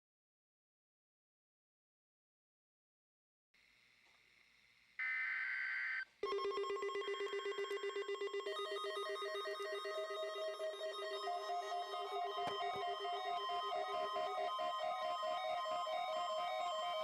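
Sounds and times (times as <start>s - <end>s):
electronic beep: 5.0s - 17.0s
pulsing electronic ring: 6.2s - 17.0s
simple stepping melody: 8.6s - 17.0s.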